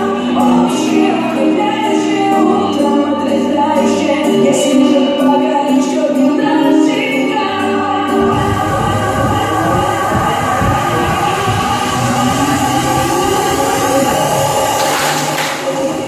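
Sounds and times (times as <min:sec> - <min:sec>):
choir-like singing: 0:00.0 - 0:16.0
music accompaniment: 0:00.0 - 0:16.0
heavy low music part: 0:07.8 - 0:16.0.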